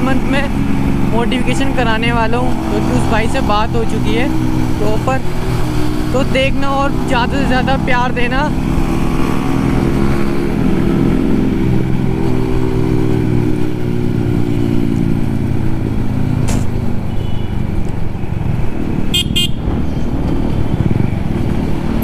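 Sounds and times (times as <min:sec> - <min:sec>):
motorcycle engine droning: 0:00.0 - 0:22.0
vehicle horn beeping: 0:17.1 - 0:17.6, 0:19.1 - 0:19.6.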